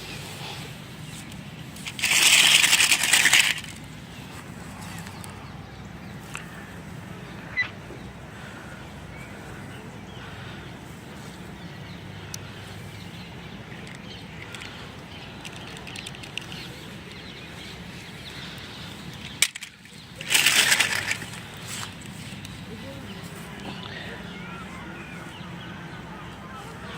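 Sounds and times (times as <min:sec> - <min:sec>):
loud crinkling rustle: 0:00.0 - 0:05.6, 0:08.3 - 0:26.9
steady low hum: 0:00.0 - 0:26.9
plastic packaging clicks and rustles: 0:01.2 - 0:03.9, 0:13.8 - 0:17.3, 0:18.3 - 0:22.6.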